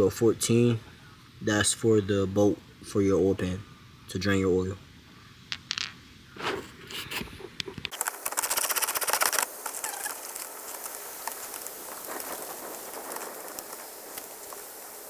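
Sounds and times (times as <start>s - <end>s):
steady hiss: 0.0s - 15.0s
rapid clicks: 7.9s - 14.6s.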